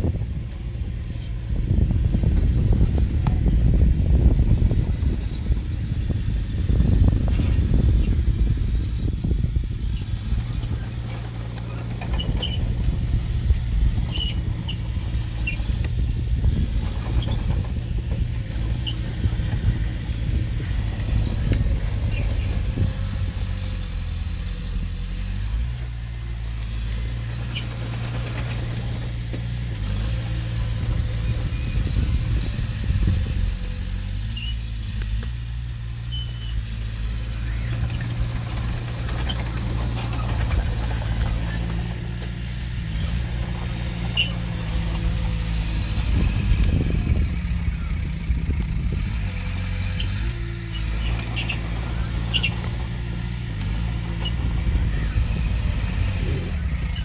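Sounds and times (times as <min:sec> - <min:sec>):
heavy diesel engine running: 0:00.0 - 0:57.0
short high squeaks: 0:14.1 - 0:15.8, 0:33.7 - 0:34.8, 0:36.0 - 0:38.5, 0:42.9 - 0:46.4, 0:50.0 - 0:57.0.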